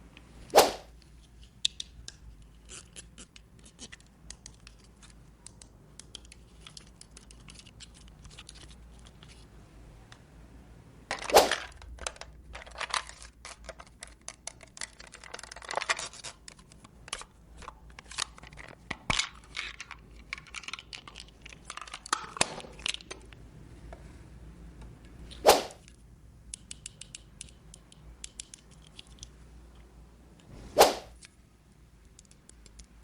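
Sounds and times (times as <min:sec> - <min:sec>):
plastic toy parts clicking: 0:01.2 - 0:09.4, 0:11.1 - 0:23.4, 0:25.8 - 0:29.4, 0:32.0 - 0:33.0
packaging rustling: 0:11.1 - 0:23.2.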